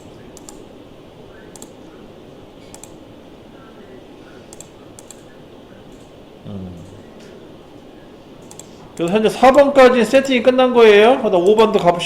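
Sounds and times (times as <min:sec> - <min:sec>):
low background hiss: 0:00.0 - 0:12.0
computer mouse clicks: 0:00.3 - 0:00.7, 0:01.5 - 0:01.8, 0:02.6 - 0:03.0, 0:04.5 - 0:05.3, 0:05.9 - 0:06.1, 0:08.4 - 0:09.6.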